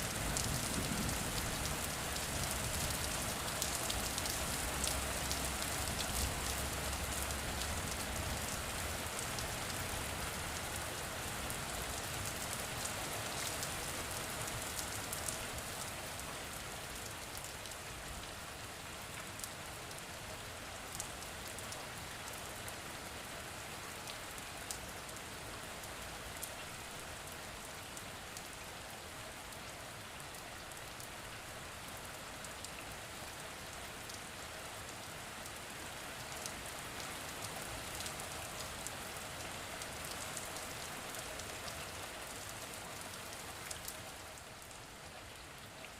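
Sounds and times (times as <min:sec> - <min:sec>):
steady rain hiss: 0:00.0 - 0:45.9.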